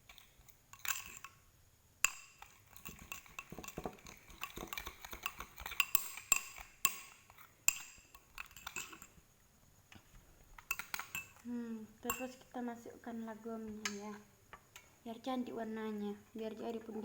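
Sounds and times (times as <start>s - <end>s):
stirrer scraping a container: 0.0s - 1.3s, 2.3s - 9.2s.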